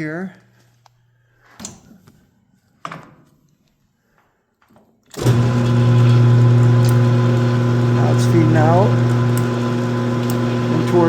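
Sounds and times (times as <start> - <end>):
lathe motor humming: 5.2 - 11.0.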